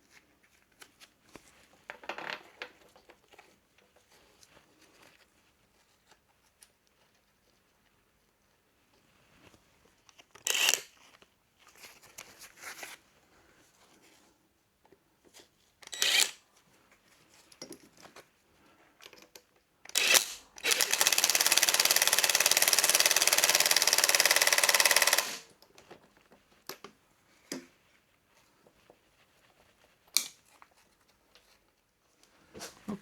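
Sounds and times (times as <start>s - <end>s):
tools clicking and knocking: 19.1s - 25.4s
impact driver hammering: 20.0s - 25.4s.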